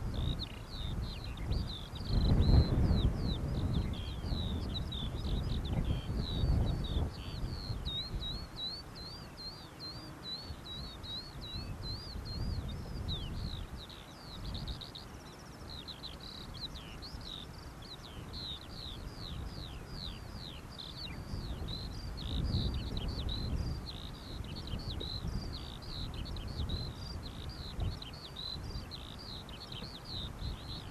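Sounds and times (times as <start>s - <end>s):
songbird singing: 0.0s - 30.9s
wind rumble on microphone: 0.0s - 30.9s.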